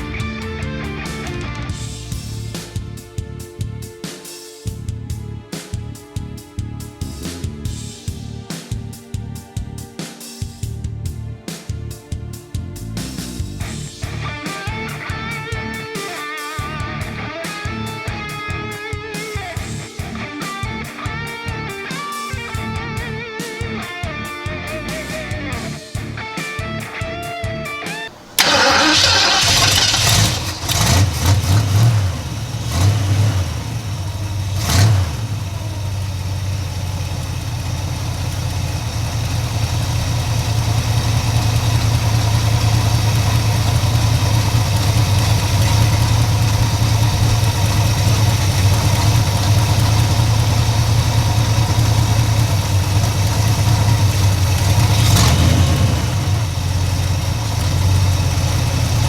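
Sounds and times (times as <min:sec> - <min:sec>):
car engine revving and idling: 0:28.4 - 0:59.0.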